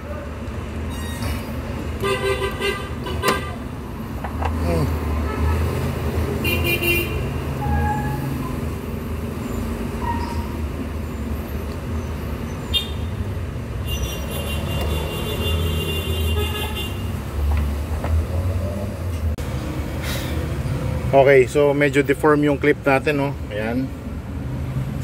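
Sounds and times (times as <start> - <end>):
road traffic rumble: 0.0 - 25.0
vehicle horn toots: 2.0 - 3.6, 6.4 - 8.3, 13.8 - 17.2.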